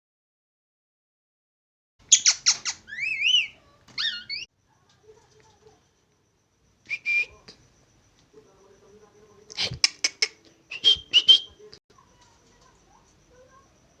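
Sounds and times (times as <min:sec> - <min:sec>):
parakeet squawks and whistles: 0:02.1 - 0:04.5.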